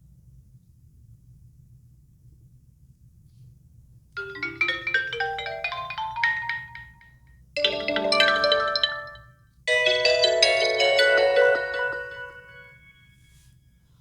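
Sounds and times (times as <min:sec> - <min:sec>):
ringtone chord phrase: 0:04.2 - 0:13.2
phone ringtone melody: 0:04.2 - 0:13.4.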